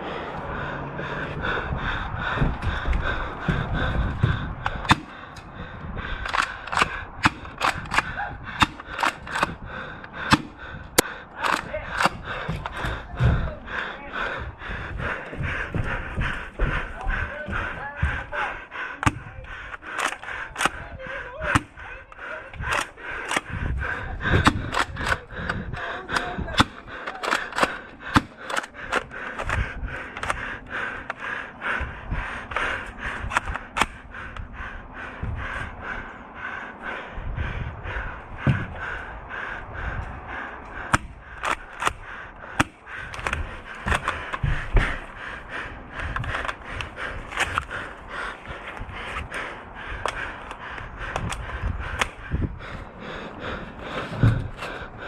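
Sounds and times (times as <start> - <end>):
low thuds and rustling: 1.8 - 4.9, 54.0 - 54.7.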